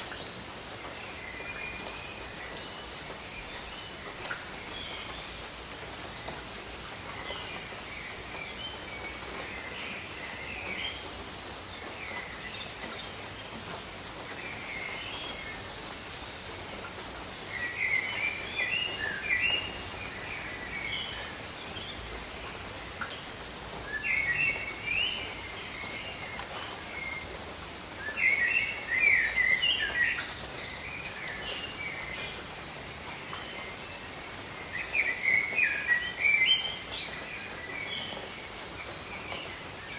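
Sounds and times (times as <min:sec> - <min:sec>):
light rain on leaves: 0:00.0 - 0:39.9
songbirds chirping and singing: 0:17.0 - 0:23.2, 0:23.8 - 0:39.9.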